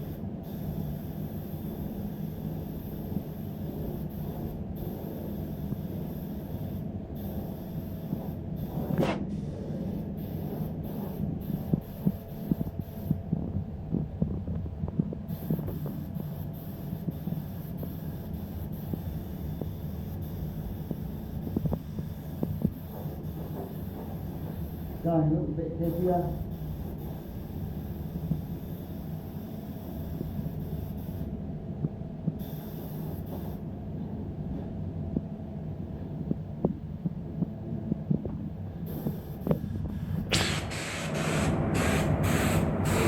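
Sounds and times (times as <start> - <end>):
low machine hum: 0.0 - 43.0
brief swish: 40.3 - 43.0.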